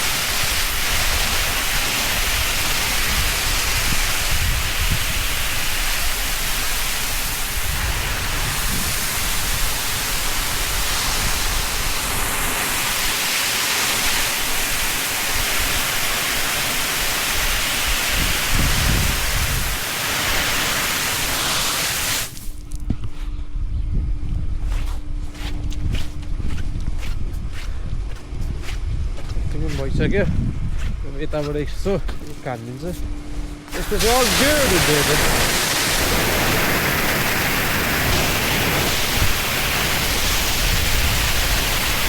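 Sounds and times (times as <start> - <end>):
hose spraying water: 0.0 - 22.7, 33.7 - 42.0
steady hum: 0.0 - 42.0.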